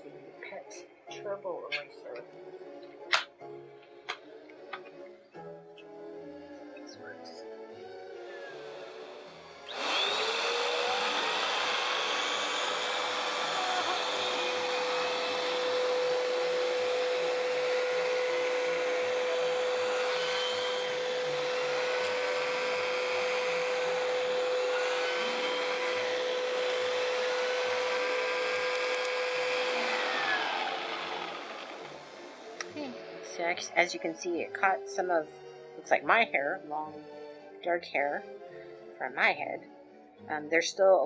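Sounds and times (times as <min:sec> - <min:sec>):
vacuum tool whine: 0:07.8 - 0:33.8
vacuum cleaner motor running: 0:07.9 - 0:33.8.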